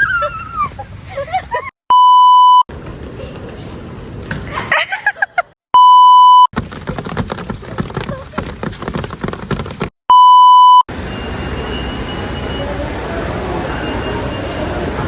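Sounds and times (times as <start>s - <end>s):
electronic bleeps: 1.9s - 2.6s, 5.8s - 6.5s, 10.1s - 12.7s.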